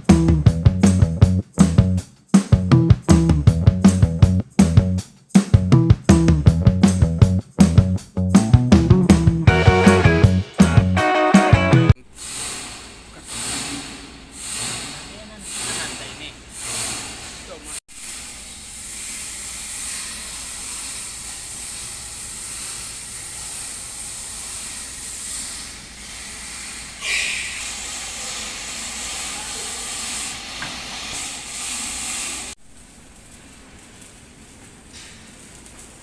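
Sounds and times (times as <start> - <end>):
rust abraded off lathe bushing: 12.0 - 32.6
loud scrape: 12.1 - 32.6.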